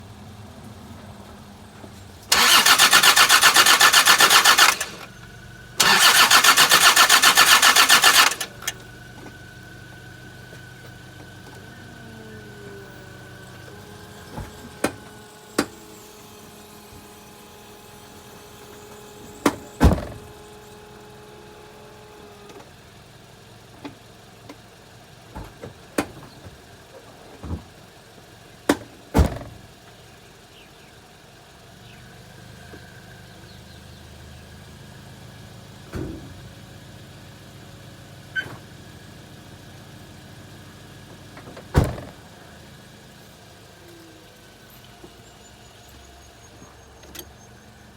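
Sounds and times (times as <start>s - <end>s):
steady mechanical hum: 0.0s - 30.0s
clicks and thunks from starter: 2.2s - 9.4s, 13.5s - 17.1s, 18.1s - 20.8s.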